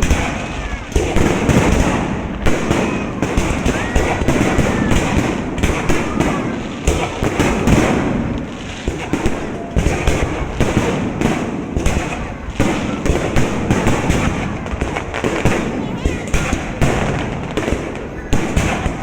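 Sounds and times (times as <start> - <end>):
fireworks bangs and crackles: 0.0 - 19.0.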